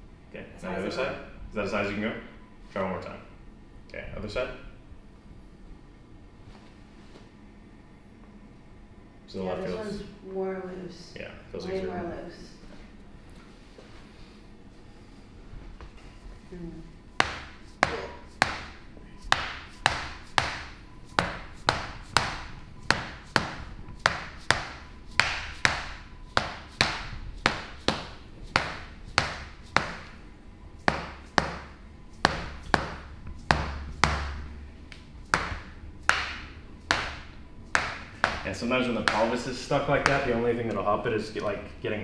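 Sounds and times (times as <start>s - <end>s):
adjusting hammer tapping a back: 17.1s - 40.5s.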